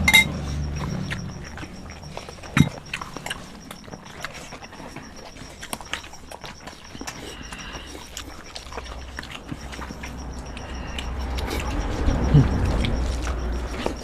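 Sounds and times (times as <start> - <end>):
clicks and taps on metal plates: 0.0 - 0.3.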